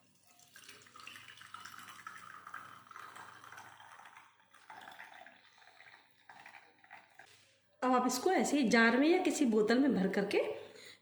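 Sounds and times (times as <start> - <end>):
liquid trickling into a container: 0.0 - 7.4.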